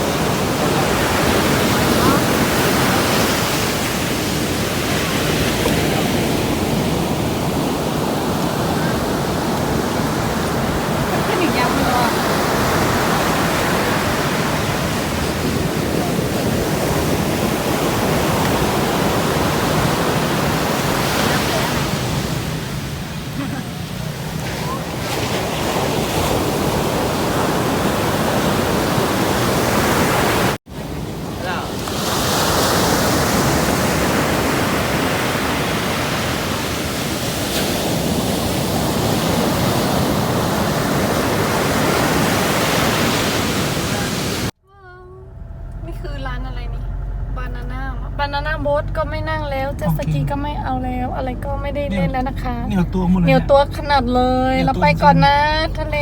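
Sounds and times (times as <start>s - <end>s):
breaking surf: 0.0s - 44.6s
wind: 0.0s - 56.0s.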